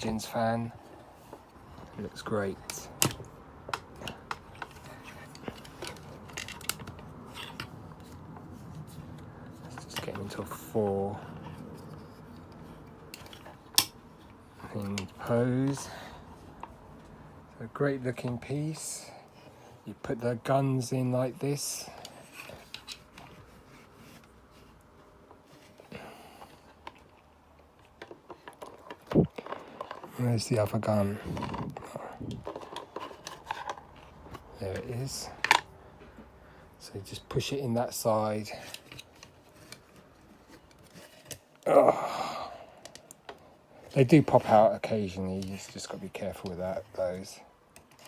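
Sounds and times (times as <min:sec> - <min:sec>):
plastic parts clicking and tapping: 0:02.6 - 0:07.7.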